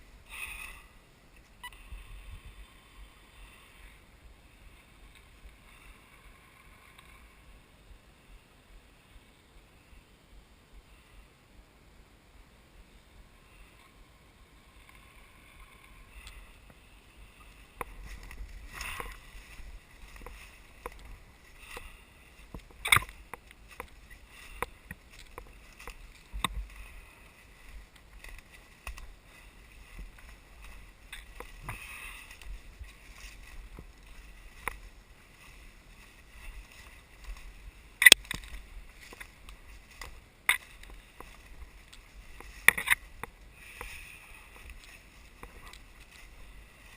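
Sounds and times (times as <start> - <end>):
footsteps through undergrowth: 14.7 - 46.9.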